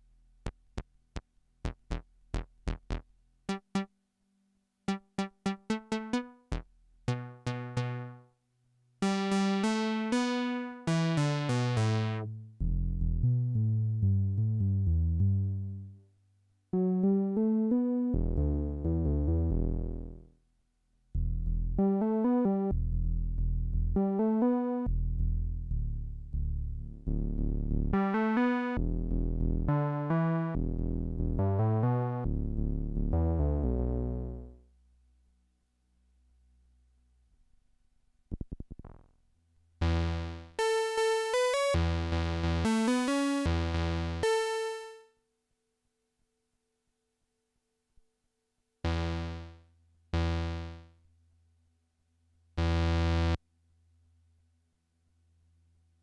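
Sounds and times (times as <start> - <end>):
synthesizer bass notes: 1.6 - 3.9, 4.9 - 8.2, 9.0 - 15.9, 16.8 - 20.2, 21.2 - 34.6.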